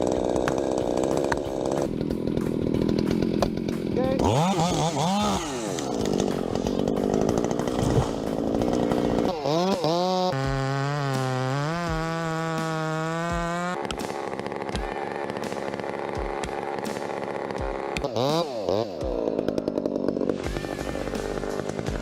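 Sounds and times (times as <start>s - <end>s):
chainsaw cutting and revving: 0.0s - 22.0s.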